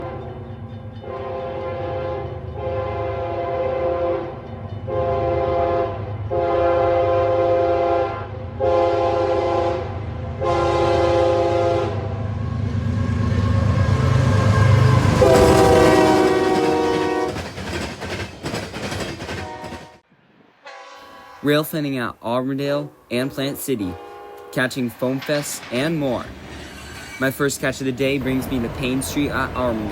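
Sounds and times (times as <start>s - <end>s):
locomotive air horn blasts: 1.0s - 12.2s, 14.2s - 17.5s, 19.4s - 20.0s, 20.6s - 25.2s
locomotive engine rumble: 4.5s - 20.0s, 21.2s - 29.9s
train wheels clicking over rail joints: 14.0s - 20.0s, 24.0s - 29.9s.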